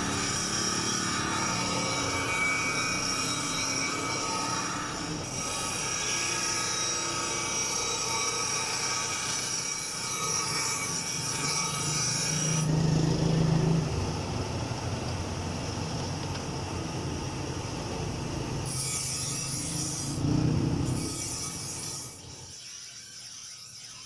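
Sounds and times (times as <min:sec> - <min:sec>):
grinder squealing on steel: 0:00.0 - 0:12.9, 0:18.6 - 0:24.0.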